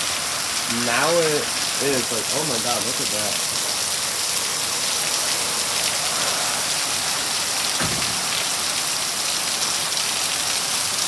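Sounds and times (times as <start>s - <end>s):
heavy rain pouring: 0.0s - 11.0s
low thump: 7.8s - 8.5s.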